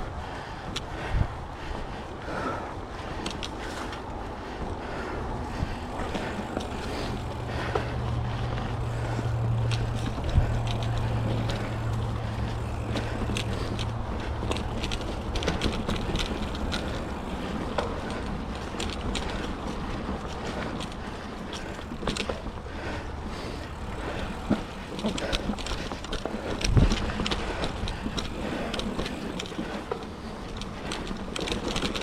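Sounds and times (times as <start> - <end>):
bike clicks and rattles: 0.0 - 32.0
bike tyre and wind noise: 0.0 - 32.0.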